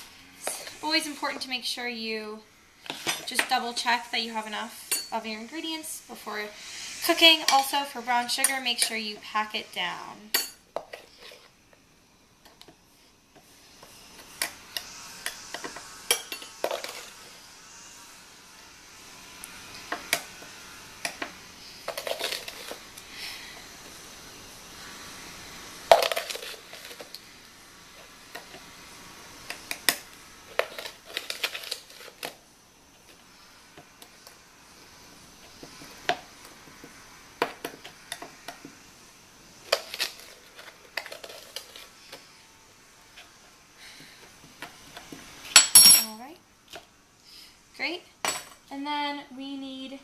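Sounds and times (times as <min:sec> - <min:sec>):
utensils clattering: 0:02.9 - 0:03.7, 0:21.9 - 0:22.8.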